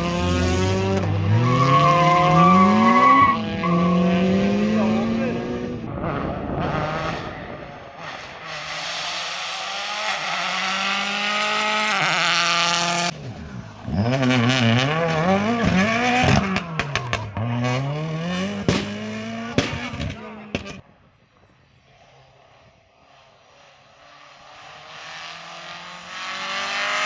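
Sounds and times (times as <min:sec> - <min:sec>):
rally car engine revving: 0:00.0 - 0:20.9, 0:22.0 - 0:27.0
engine pops and cracks: 0:14.2 - 0:20.8.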